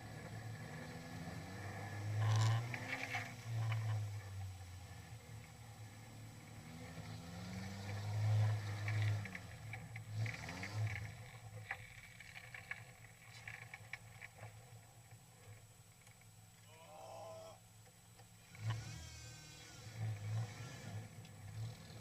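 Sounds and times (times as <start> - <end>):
off-road engine revving: 0.0 - 13.8, 18.4 - 22.0.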